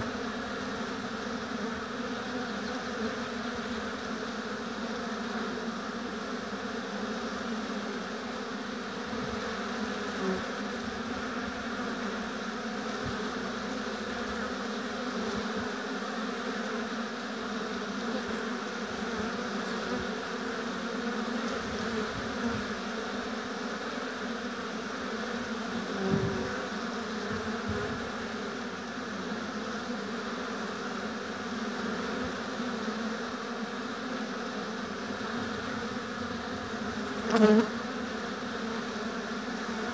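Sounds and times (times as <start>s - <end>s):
honeybees buzzing: 0.0s - 39.9s.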